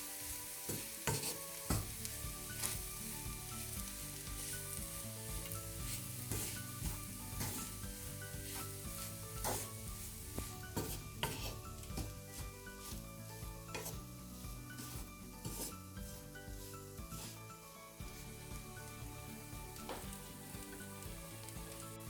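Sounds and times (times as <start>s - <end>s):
food sizzling in a pan: 0.0s - 22.0s
quiet background music: 0.0s - 22.0s
spoon scraping a pan: 0.2s - 17.5s.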